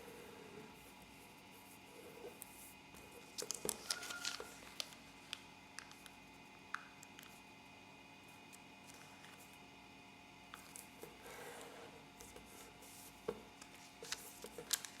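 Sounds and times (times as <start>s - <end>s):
paper crackling and creasing: 3.2s - 6.2s, 12.8s - 15.0s.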